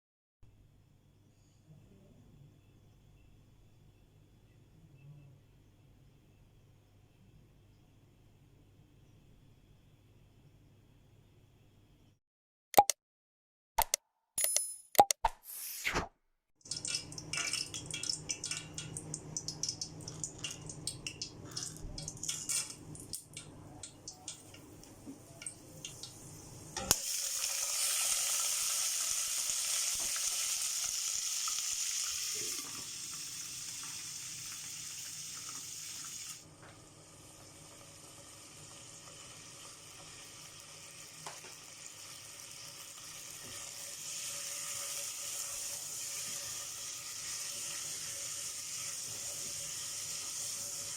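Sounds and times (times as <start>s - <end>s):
food sizzling in hot oil: 25.8s - 36.4s, 37.2s - 50.9s.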